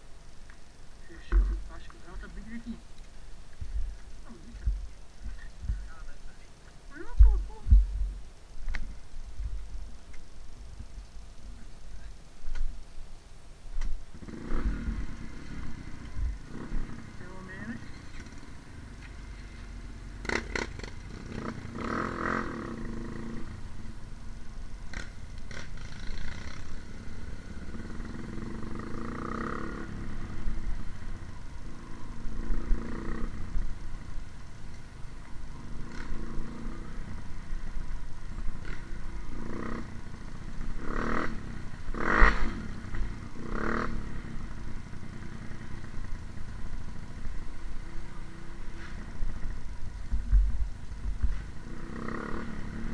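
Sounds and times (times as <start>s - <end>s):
motorcycle engine revving: 14.1s - 24.1s, 24.7s - 52.9s.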